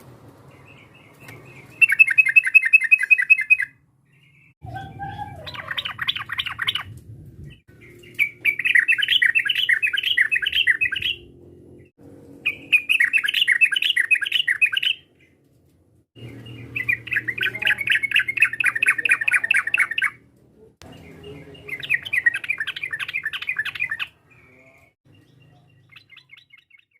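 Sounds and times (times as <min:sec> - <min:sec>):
bird song chattering notes: 0:00.5 - 0:06.9, 0:07.5 - 0:15.4, 0:16.2 - 0:20.2, 0:20.8 - 0:26.9.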